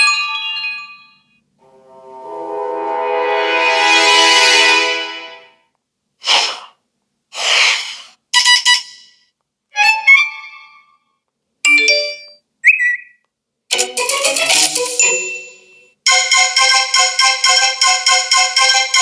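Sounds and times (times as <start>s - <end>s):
long alert tone: 1.6s - 5.5s.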